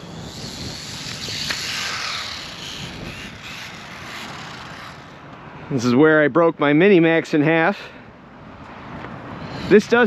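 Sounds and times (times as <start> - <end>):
small electric motor whining: 0.0 - 5.3, 9.4 - 10.0
toy car clattering on concrete: 0.2 - 5.1.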